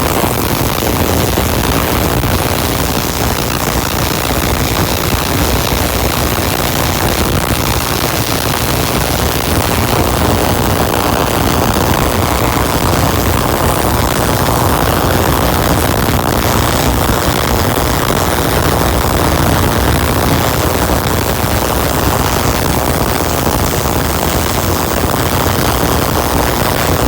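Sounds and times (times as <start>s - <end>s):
tesla coil roaring and sparking: 0.0s - 27.0s.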